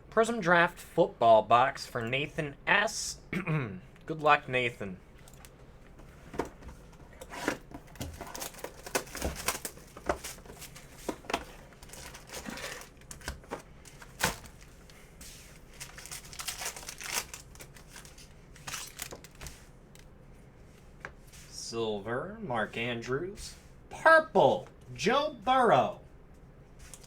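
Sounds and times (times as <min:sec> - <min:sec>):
plastic wrappers tearing and crinkling: 0:07.9 - 0:11.0, 0:11.6 - 0:14.8, 0:15.6 - 0:19.6.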